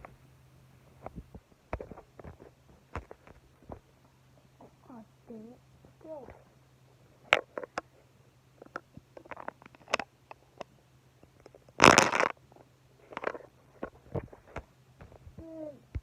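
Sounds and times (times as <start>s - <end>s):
toys clicking and knocking: 8.6s - 10.7s.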